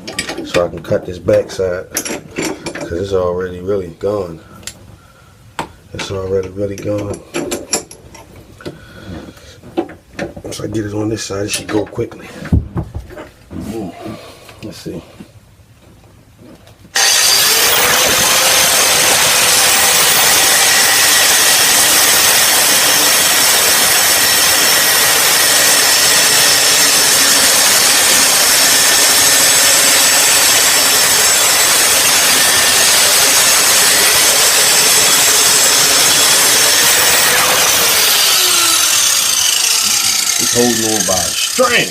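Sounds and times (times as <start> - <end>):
angle grinder cutting metal: 16.9 - 41.9.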